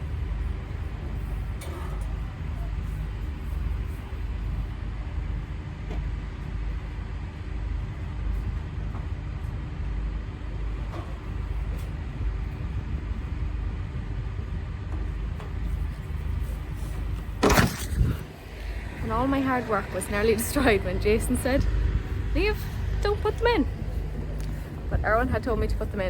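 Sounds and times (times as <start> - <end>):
machinery rumbling: 10.2 - 26.0.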